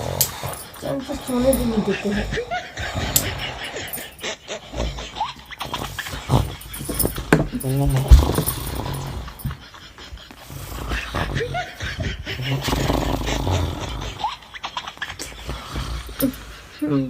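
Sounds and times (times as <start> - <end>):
man snoring: 0.0 - 9.5, 10.5 - 14.4.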